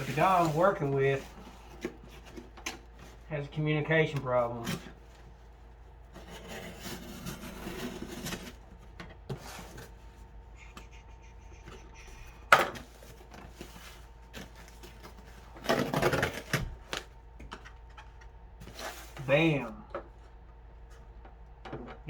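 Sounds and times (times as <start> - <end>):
hands rustling package packing: 0.0 - 3.3, 4.1 - 19.5.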